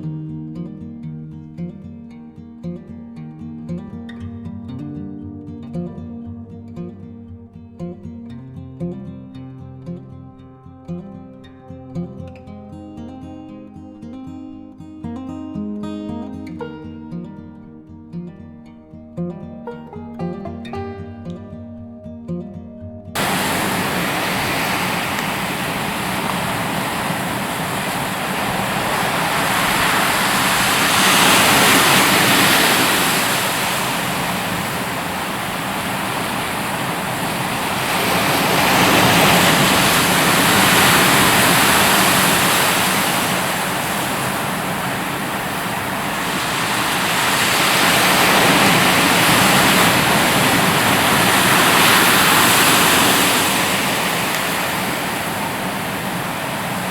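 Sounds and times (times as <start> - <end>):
ocean surf washing onto beach: 23.2 - 56.9.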